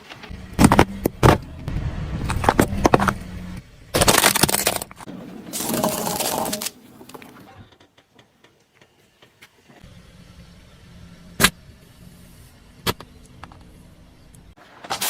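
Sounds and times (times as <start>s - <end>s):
tyres crushing objects: 4.0s - 7.6s.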